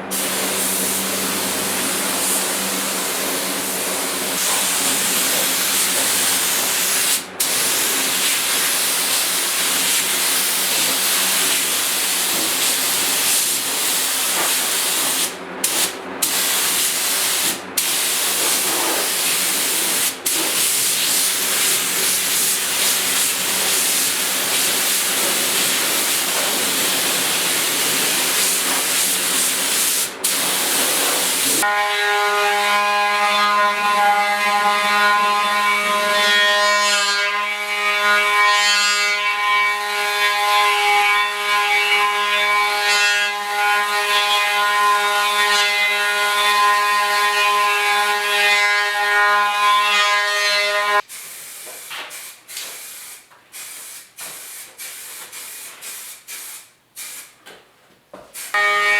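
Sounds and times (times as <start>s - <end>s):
spray gun hissing: 0.1s - 12.1s, 12.7s - 31.6s, 51.1s - 57.3s.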